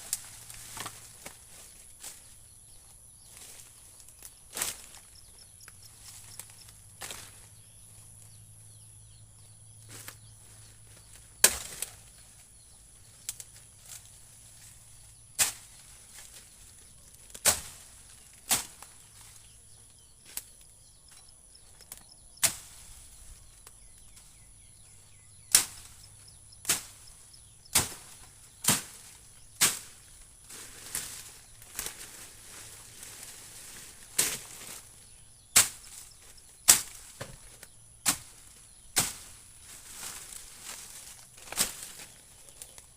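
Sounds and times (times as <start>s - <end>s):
blade chopping wood: 11.4s - 11.9s.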